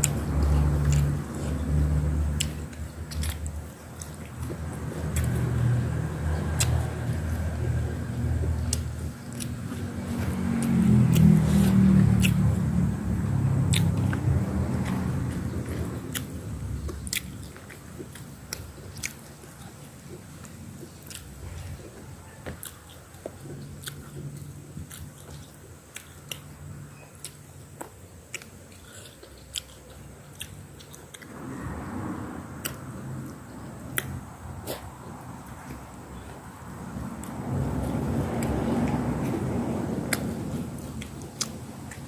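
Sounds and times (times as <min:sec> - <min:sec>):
person chewing food: 0:00.0 - 0:42.0
mouth clicks: 0:33.8 - 0:35.1.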